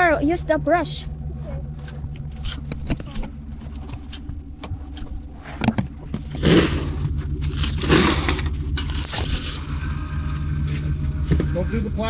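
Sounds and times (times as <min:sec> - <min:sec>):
car engine idling: 0:00.0 - 0:12.0
snow brush scraping: 0:02.3 - 0:10.9.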